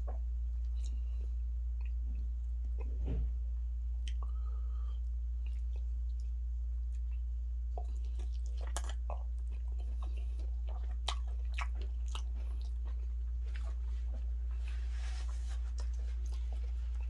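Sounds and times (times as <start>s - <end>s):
person chewing with wet clicks: 0.0s - 1.1s, 1.8s - 2.9s, 4.0s - 4.4s, 5.4s - 14.7s
steady low hum: 0.0s - 17.0s.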